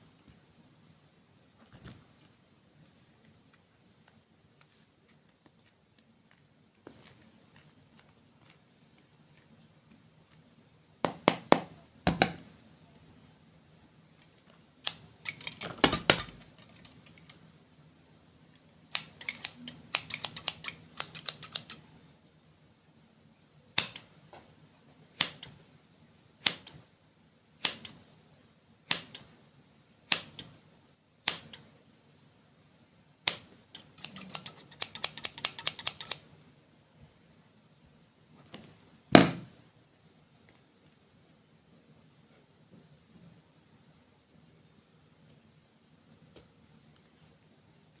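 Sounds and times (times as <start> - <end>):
clay clicking: 1.8 - 13.1, 18.4 - 21.9, 27.6 - 28.1, 30.0 - 30.6, 31.2 - 31.7, 33.2 - 36.4.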